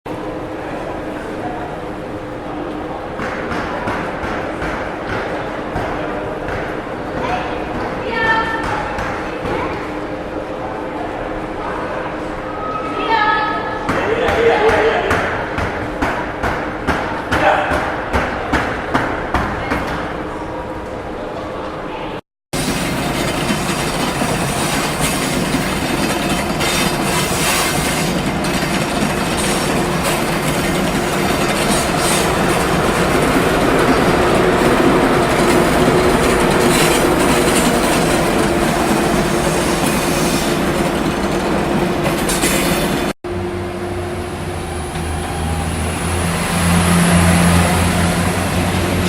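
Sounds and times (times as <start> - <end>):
train wheels clattering on rails: 2.4 - 10.1, 22.6 - 43.2.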